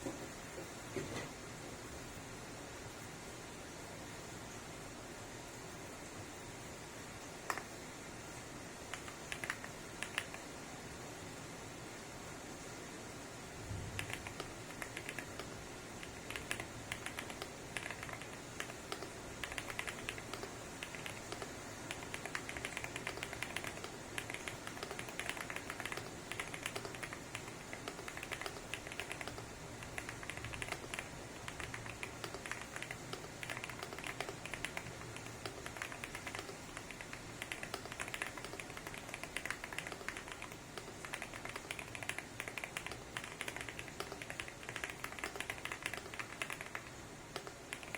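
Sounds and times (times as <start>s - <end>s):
fast typing on mechanical keyboard: 8.9s - 10.4s, 14.0s - 47.9s.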